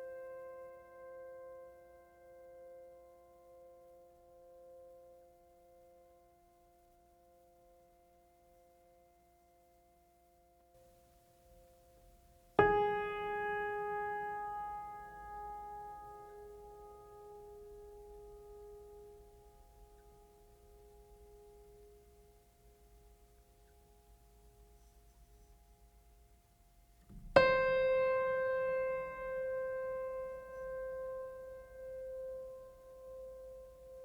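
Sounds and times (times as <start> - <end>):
soft keyboard music: 0.0 - 34.0
piano note ringing: 11.5 - 22.1, 27.0 - 34.0.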